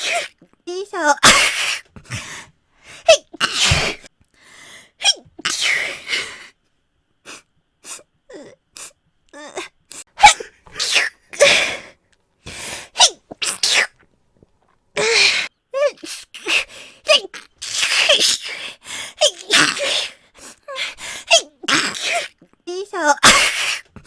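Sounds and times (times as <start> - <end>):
woman sneezing: 0.0 - 0.4, 1.0 - 1.8, 3.1 - 4.1, 10.2 - 11.8, 13.0 - 13.9, 21.3 - 23.9
quick breaths: 1.5 - 5.0, 9.9 - 13.0, 18.4 - 19.2, 20.1 - 21.3.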